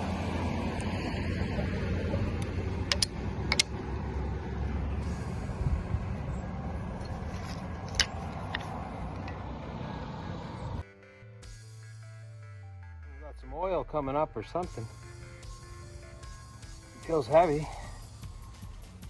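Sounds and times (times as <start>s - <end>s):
steady low rumble: 0.0s - 10.8s.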